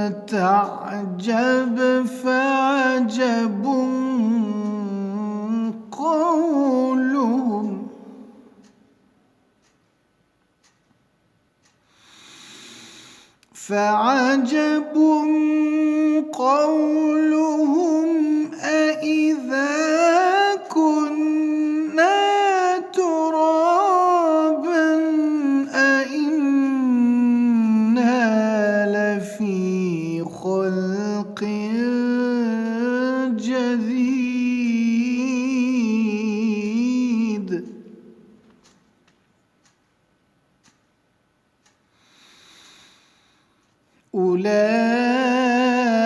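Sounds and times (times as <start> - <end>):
man chanting melodically: 0.0 - 8.7, 12.6 - 38.5, 44.1 - 46.0
echo of voice: 0.0 - 9.0, 12.1 - 38.6, 44.0 - 46.0.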